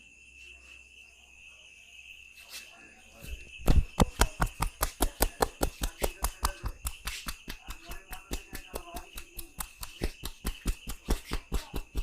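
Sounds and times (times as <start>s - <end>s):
hands slapping on skin: 3.6s - 12.0s.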